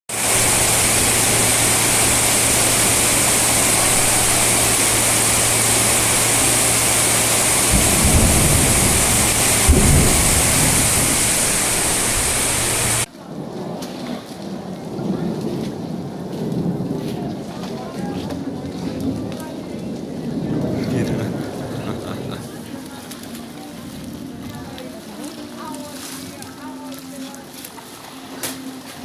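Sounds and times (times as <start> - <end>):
low hum: 0.1 - 13.1
rushing water hiss: 0.1 - 13.1
low rumbling thumps: 0.2 - 13.1.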